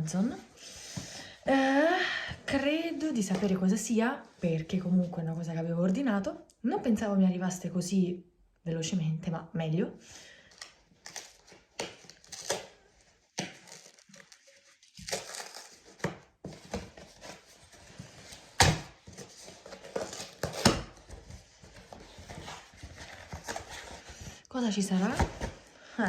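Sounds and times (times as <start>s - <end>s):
packaging tearing and rustling: 10.5s - 24.2s.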